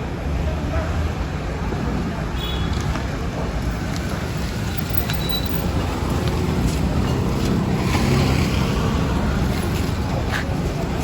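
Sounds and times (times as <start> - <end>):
road traffic rumble: 0.0 - 11.0.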